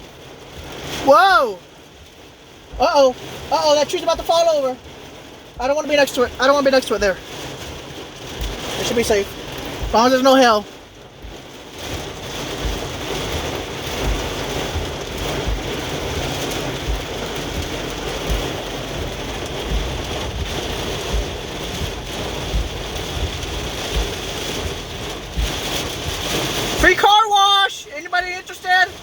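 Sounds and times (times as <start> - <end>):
rain pelting a car roof: 0.0 - 29.0
low thumps: 1.7 - 26.9.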